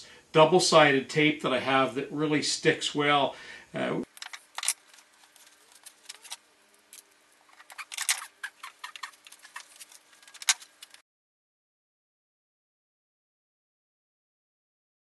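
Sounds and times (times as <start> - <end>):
tape peeling crackles and clicks: 4.1 - 11.0.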